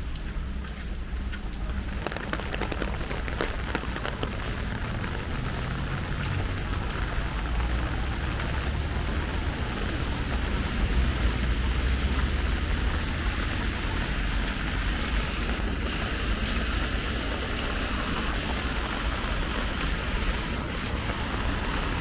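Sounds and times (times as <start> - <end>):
steady rain falling: 0.0 - 22.0
low rumble: 1.0 - 15.1.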